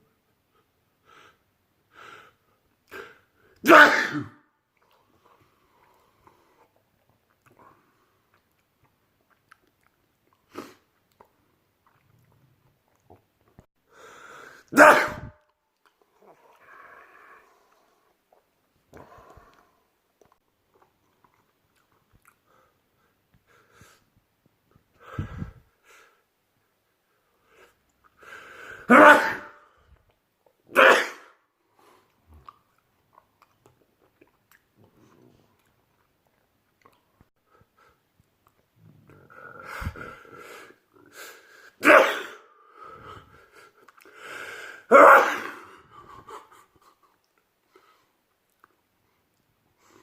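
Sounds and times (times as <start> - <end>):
person sneezing: 2.9 - 4.4, 14.7 - 15.4, 28.8 - 29.6, 30.7 - 31.4, 41.8 - 42.5, 44.8 - 45.8
sniffs and catching breaths: 24.9 - 26.3, 37.4 - 41.8.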